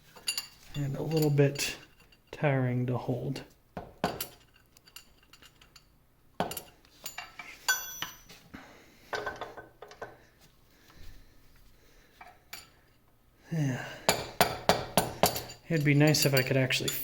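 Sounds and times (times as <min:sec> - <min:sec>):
hammer tapping metal punch: 0:14.1 - 0:17.0.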